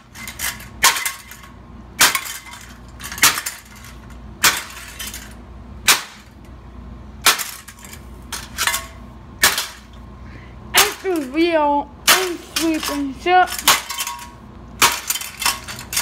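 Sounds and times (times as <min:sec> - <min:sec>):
ceiling fan being smashed: 0:00.0 - 0:06.5, 0:07.2 - 0:10.0, 0:10.8 - 0:11.4, 0:12.0 - 0:16.0
breaking parts clinking: 0:00.1 - 0:05.4, 0:07.3 - 0:09.9, 0:12.1 - 0:16.0.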